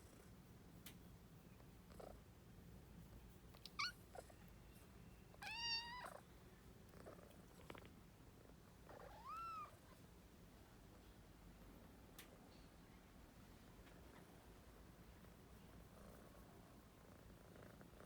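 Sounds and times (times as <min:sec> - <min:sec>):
kittens meowing: 0:03.6 - 0:04.0, 0:05.4 - 0:06.2, 0:08.9 - 0:09.8.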